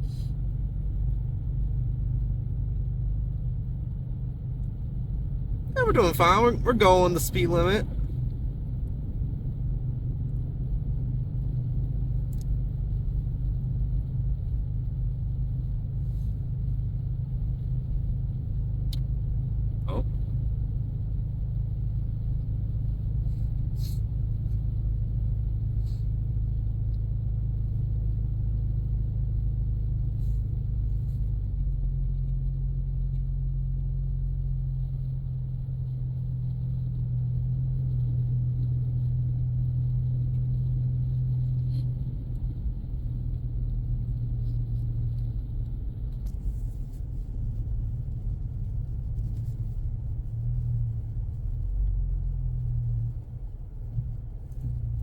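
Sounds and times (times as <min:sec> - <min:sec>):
car engine drone: 0:00.0 - 0:55.0
tyres on snowy road: 0:03.3 - 0:55.0.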